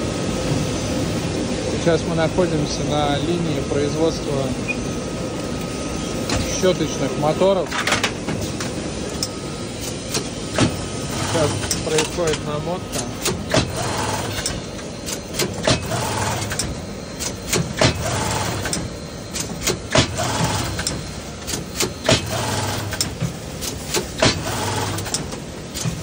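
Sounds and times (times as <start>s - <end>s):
coil winding machine motor hum: 0.0s - 26.0s
machine clicks and knocks: 7.7s - 26.0s.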